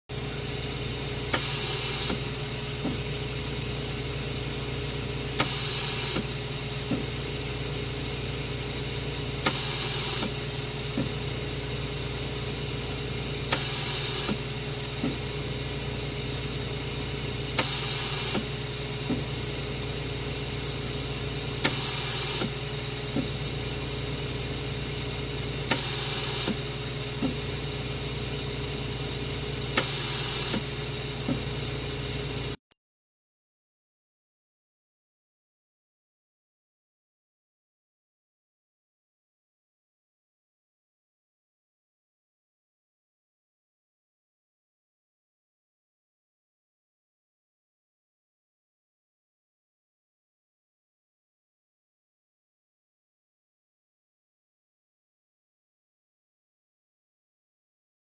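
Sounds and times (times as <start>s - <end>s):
sharp valve click: 5.4s - 6.2s, 13.5s - 14.4s, 17.6s - 18.4s, 25.7s - 26.6s.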